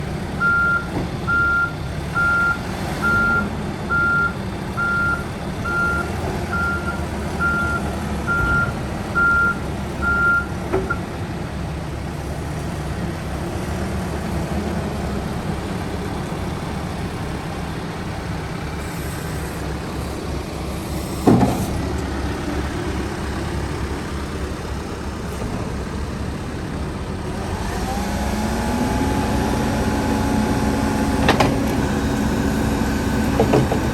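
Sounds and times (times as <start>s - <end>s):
diesel engine running: 0.0s - 33.9s
reverse alarm beeping: 0.4s - 10.5s.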